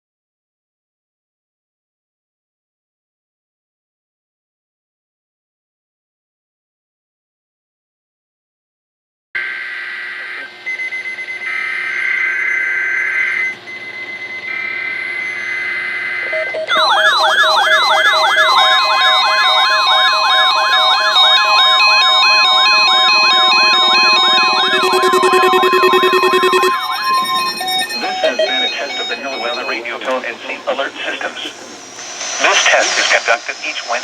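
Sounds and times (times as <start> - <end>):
warbling electronic alert tone: 16.7 - 29.1
steady high tone: 16.7 - 29.7
raspy buzzing data tones: 21.1 - 29.8.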